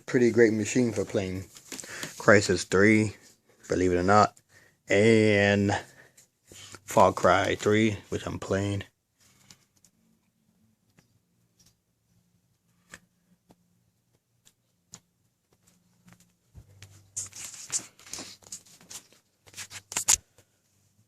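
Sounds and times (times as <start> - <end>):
rustling and scraping: 0.1 - 4.4, 9.2 - 10.0, 15.5 - 20.9.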